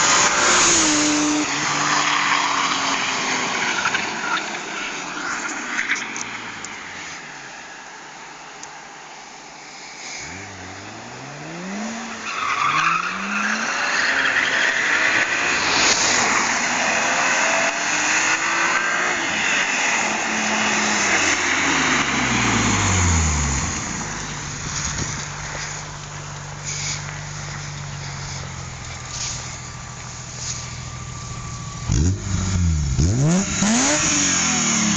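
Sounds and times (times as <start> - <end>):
car engine revving: 10.1 - 14.0, 14.7 - 34.9.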